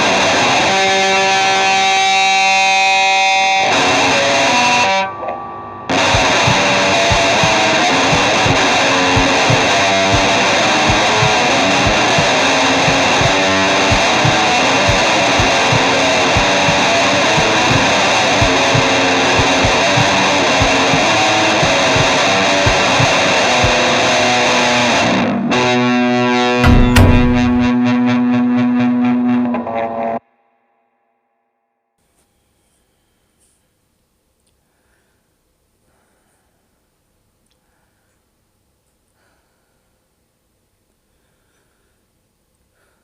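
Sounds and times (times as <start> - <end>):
distorted electric guitar music: 0.0 - 30.2
ringing low chord with echo: 4.4 - 23.7
low thud: 26.6 - 27.8.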